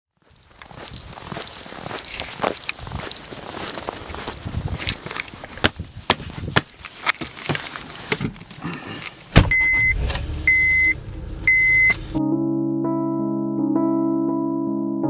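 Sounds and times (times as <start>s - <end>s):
footsteps: 0.2s - 12.2s
car door shutting: 9.3s - 12.2s
high chime beeps from car: 9.5s - 12.1s
low rumble: 9.5s - 12.2s
electric piano music: 10.3s - 15.0s.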